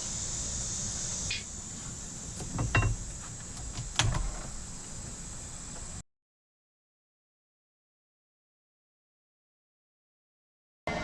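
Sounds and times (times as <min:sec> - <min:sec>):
steady background hiss: 0:00.0 - 0:06.0
knocks and clunks: 0:02.3 - 0:04.6.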